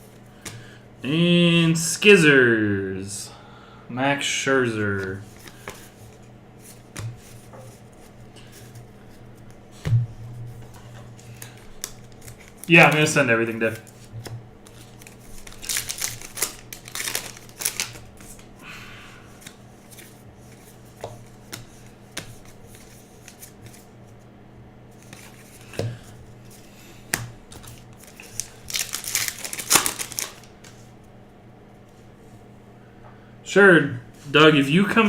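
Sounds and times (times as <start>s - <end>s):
cards rustling: 5.0s - 9.2s, 10.7s - 18.5s, 19.4s - 23.9s, 25.0s - 25.9s, 26.5s - 30.9s
wrapper crinkling: 11.2s - 13.1s, 14.6s - 18.5s, 27.6s - 30.5s.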